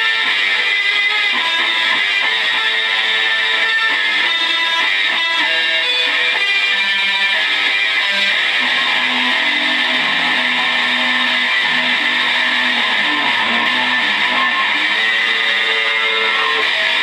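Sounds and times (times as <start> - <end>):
distorted electric guitar: 0.0 - 17.0.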